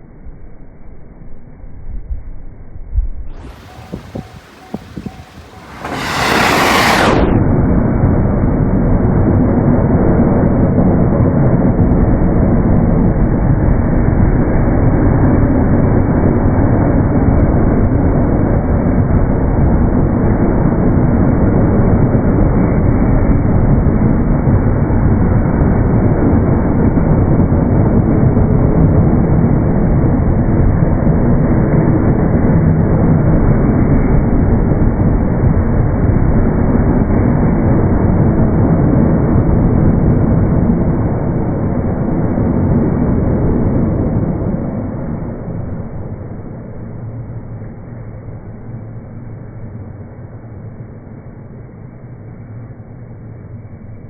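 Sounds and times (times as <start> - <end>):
slowed electric train passing: 3.4 - 7.4.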